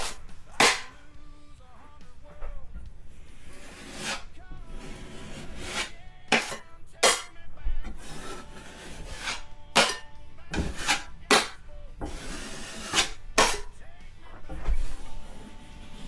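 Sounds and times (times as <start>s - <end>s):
drywall knife scraping: 0.0s - 1.0s, 3.1s - 7.3s, 7.9s - 13.8s, 14.4s - 16.0s.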